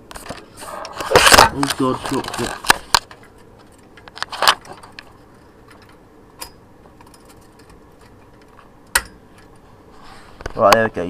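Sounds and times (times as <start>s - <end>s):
heatsink clicks and knocks: 5.8s - 9.5s.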